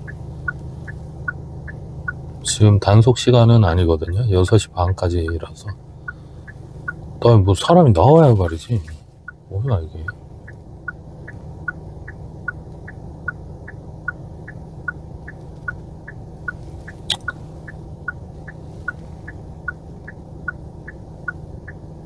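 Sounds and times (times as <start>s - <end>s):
low car hum: 0.0s - 22.0s
indicator relay ticking: 3.7s - 7.0s
sharp click: 17.1s - 17.3s.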